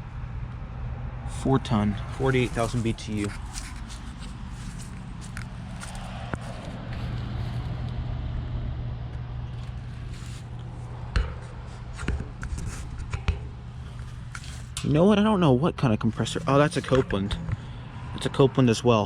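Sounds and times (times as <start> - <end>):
heat pump low hum: 0.0 - 19.0
sharp clicks and knocks: 11.1 - 13.6.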